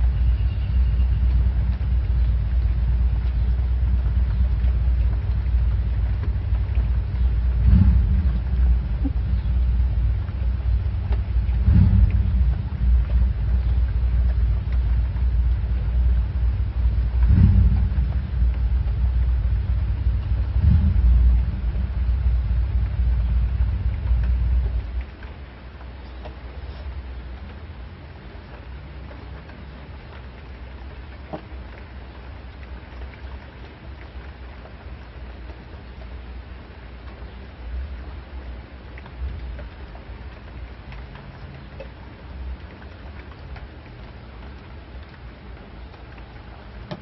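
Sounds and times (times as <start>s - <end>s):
fan air buffeting microphone: 0.0s - 47.0s.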